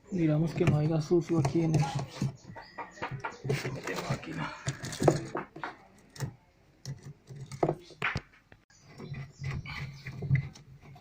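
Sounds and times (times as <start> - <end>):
clicks and taps of parts and tools: 0.6 - 8.6.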